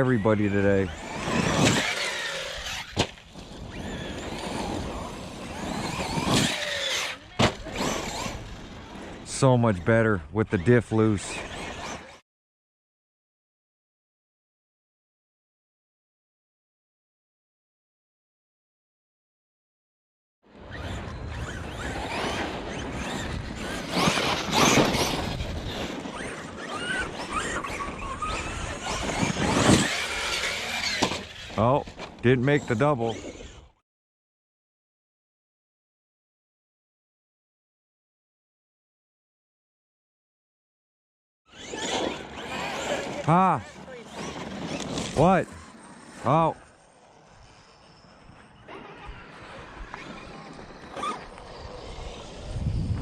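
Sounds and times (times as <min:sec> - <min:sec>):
rc car motor whine: 0:00.1 - 0:12.2, 0:20.5 - 0:33.8, 0:41.5 - 0:53.0
electric motor whining: 0:20.6 - 0:33.8.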